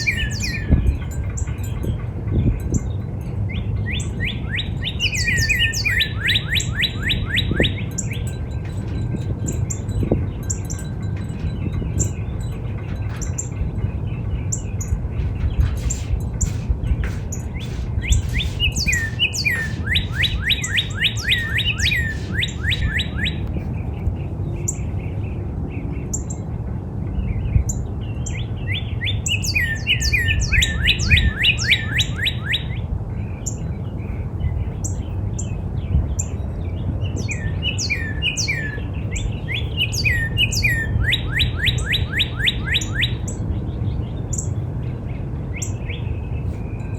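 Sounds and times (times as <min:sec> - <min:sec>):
cardinal singing whistles: 0:00.0 - 0:01.0, 0:04.2 - 0:08.3, 0:18.0 - 0:23.4
steady low rumble: 0:00.0 - 0:31.4
short high bird chips: 0:15.6 - 0:23.4.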